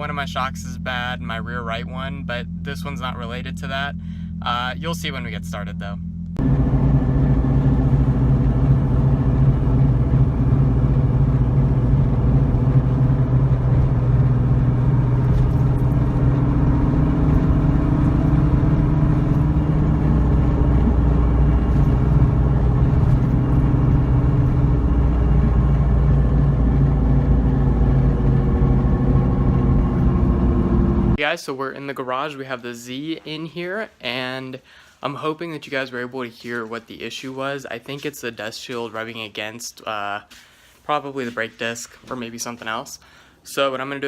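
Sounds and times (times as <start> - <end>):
car engine drone at speed: 0.0 - 31.2
road noise: 6.1 - 31.2.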